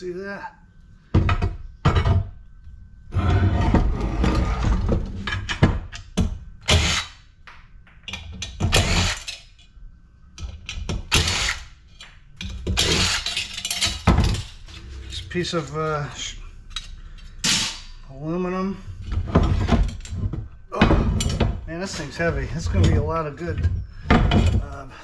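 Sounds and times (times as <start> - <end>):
metal parts clattering and scraping: 3.2 - 7.2, 8.1 - 9.7, 10.4 - 18.0, 19.0 - 25.0.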